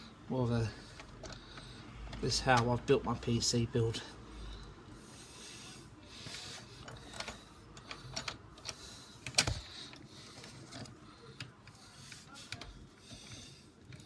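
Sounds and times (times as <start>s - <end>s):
plastic and metal clicks and scrapes: 6.2s - 14.0s.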